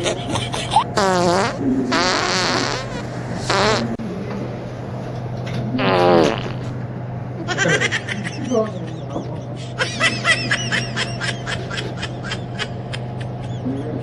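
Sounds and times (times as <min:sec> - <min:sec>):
fart noises: 0:00.7 - 0:04.0, 0:05.8 - 0:06.8.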